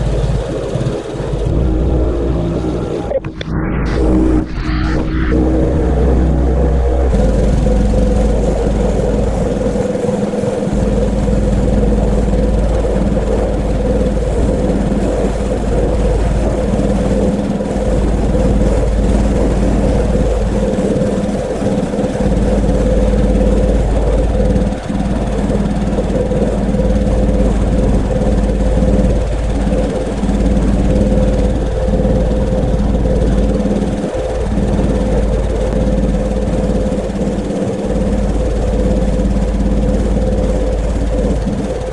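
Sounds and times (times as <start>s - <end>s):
pressure washer humming: 5.3s - 24.6s.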